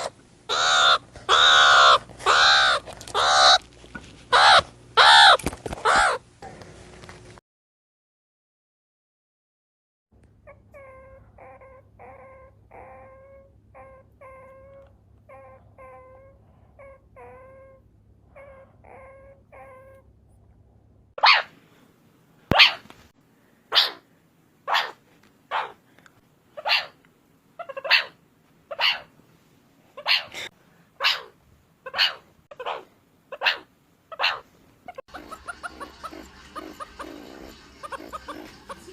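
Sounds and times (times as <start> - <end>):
loud noisy meerkat calls: 0.0 - 3.6, 4.3 - 6.2, 23.7 - 24.0, 24.7 - 25.8, 26.6 - 27.0, 27.6 - 29.1, 30.0 - 38.9
meerkat chirping calls: 0.0 - 3.6, 4.3 - 6.2, 10.4 - 17.8, 18.4 - 20.0, 22.5 - 22.8, 23.7 - 24.0, 24.7 - 25.8, 26.6 - 27.0, 27.6 - 29.1, 30.0 - 38.9.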